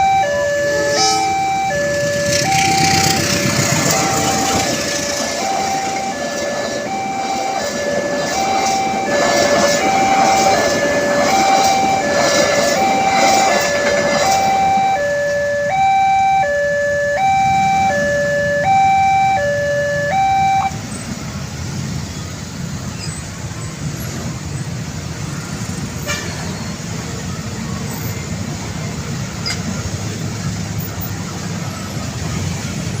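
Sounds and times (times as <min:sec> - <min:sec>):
level crossing alarm two-tone signal: 0:00.0 - 0:20.8
passing train rattling: 0:00.0 - 0:33.0.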